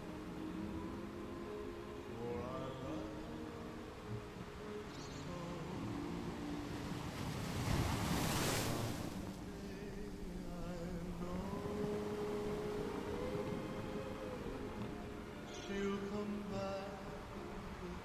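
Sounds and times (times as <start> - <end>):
ocean surf washing on beach: 0.0 - 18.0
wave breaking: 5.5 - 16.5.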